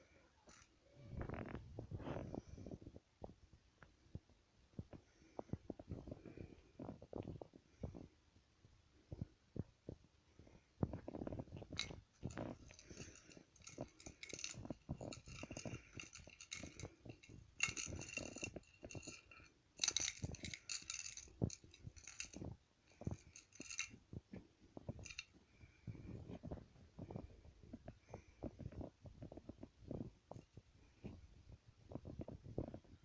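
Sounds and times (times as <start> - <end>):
metal jewelry clinking: 0.4 - 1.1, 11.5 - 24.2, 24.8 - 25.4
handling knocks and rubbing: 10.9 - 25.3.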